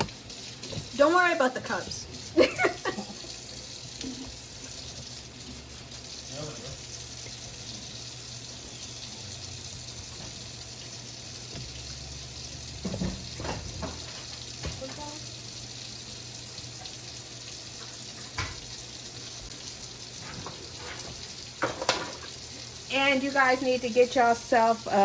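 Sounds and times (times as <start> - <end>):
tap water running into sink: 0.0 - 25.0
dishes and utensils clinking: 20.2 - 22.4.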